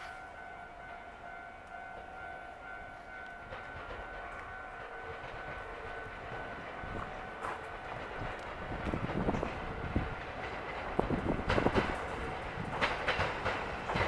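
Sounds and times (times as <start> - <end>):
train rumble: 0.0 - 14.0.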